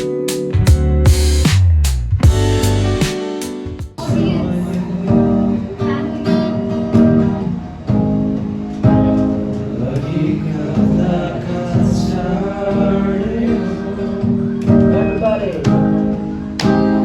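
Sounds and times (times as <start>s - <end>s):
acoustic guitar strumming: 0.0s - 17.0s
person singing: 4.0s - 7.0s.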